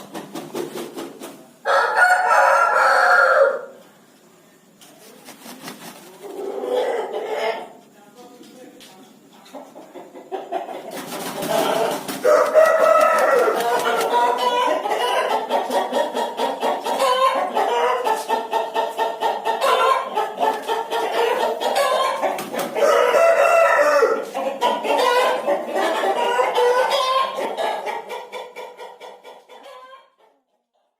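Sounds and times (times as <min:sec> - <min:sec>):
chickens clucking: 0:00.0 - 0:30.9
rooster crowing: 0:01.6 - 0:03.8, 0:11.5 - 0:15.4, 0:22.8 - 0:24.3, 0:26.2 - 0:27.6.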